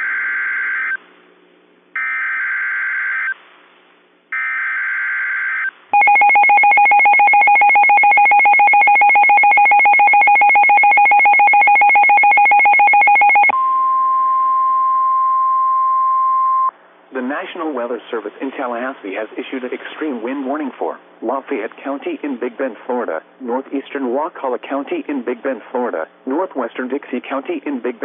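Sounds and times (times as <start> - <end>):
steady alarm tone: 2.0 - 3.4, 4.4 - 15.5.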